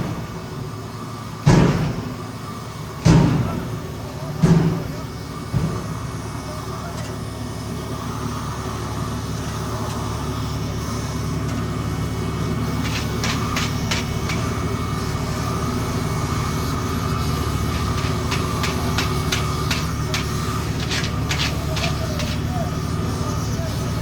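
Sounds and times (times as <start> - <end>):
diesel engine running: 0.0 - 24.0
thump: 1.5 - 2.2
sharp clicking or rattling: 12.6 - 14.8, 17.2 - 22.5.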